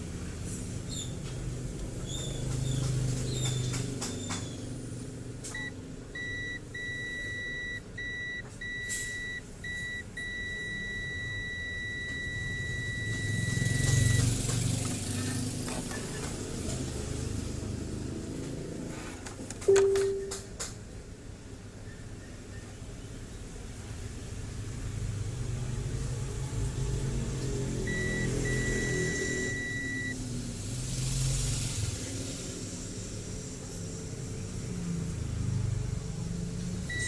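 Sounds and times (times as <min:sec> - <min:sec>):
multimeter continuity beeper: 0:05.6 - 0:14.2, 0:19.7 - 0:20.5, 0:27.9 - 0:30.2.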